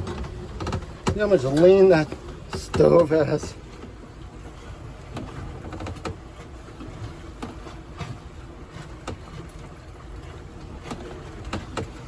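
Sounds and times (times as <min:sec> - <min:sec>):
light knocks and clicks: 0:00.0 - 0:04.0
water and wind rushing along hull: 0:00.0 - 0:12.0.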